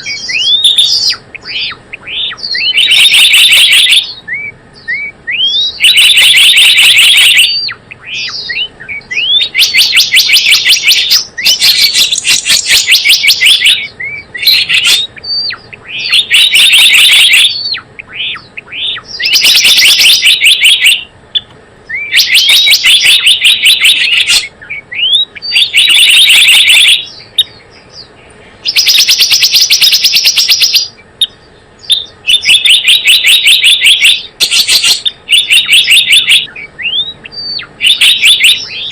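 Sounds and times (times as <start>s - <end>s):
bird rapid trilling: 0.0s - 38.9s
rising high bird chirps: 0.0s - 38.9s.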